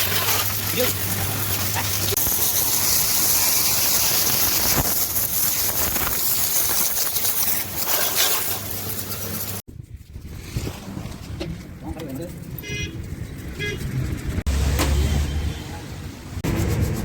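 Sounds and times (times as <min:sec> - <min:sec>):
high-pressure water spray hissing: 0:00.0 - 0:09.6.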